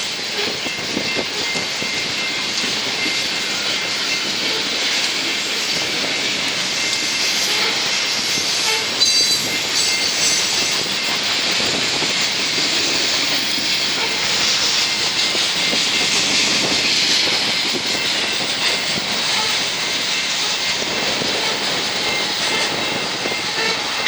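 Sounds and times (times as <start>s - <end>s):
train wheels rushing on rails: 0.0s - 24.0s
high wheel squeal: 6.0s - 11.3s.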